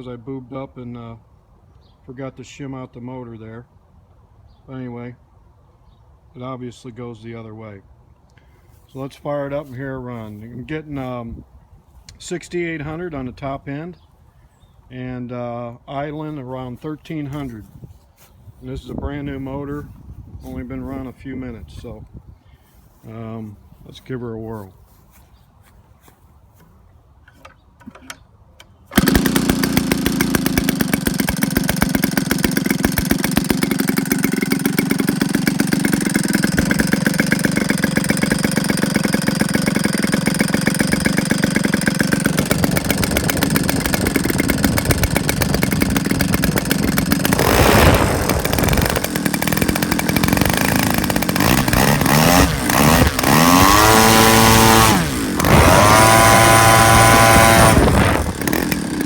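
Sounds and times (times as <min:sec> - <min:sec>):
model aircraft engine running: 0:28.9 - 0:59.0.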